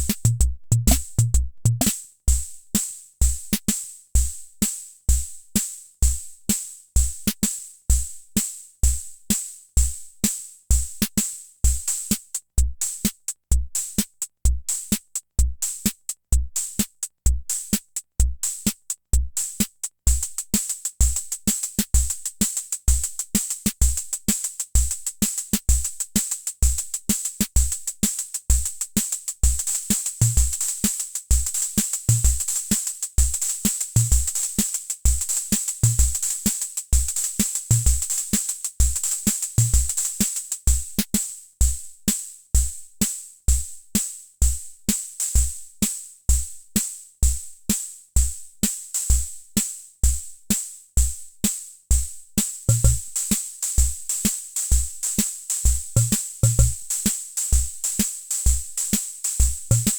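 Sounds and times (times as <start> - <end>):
bass drum thumps: 0.0 - 1.9, 52.7 - 53.2, 56.0 - 56.8
rhythm machine beat: 0.0 - 1.9, 52.7 - 53.4, 54.1 - 59.9
hi-hat ticks: 0.0 - 2.0, 10.2 - 43.3, 50.5 - 59.9.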